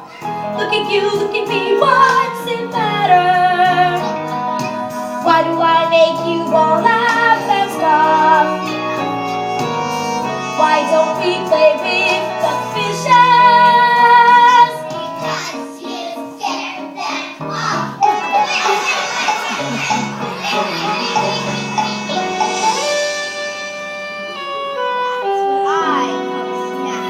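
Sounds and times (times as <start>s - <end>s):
instrumental accompaniment: 0.0s - 27.0s
woman singing with vibrato: 10.5s - 14.7s.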